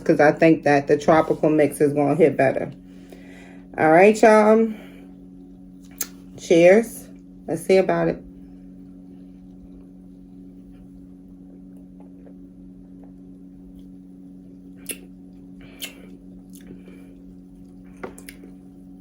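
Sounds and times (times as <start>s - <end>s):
low hum: 0.0s - 19.0s
wet mouth sounds: 5.8s - 6.2s, 14.7s - 18.6s.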